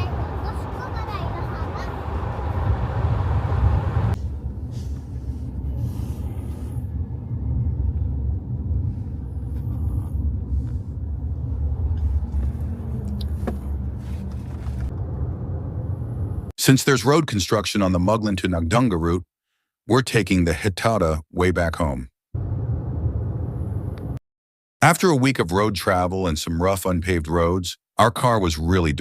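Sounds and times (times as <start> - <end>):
car engine and tyres rumbling: 0.0 - 16.5, 22.4 - 24.2.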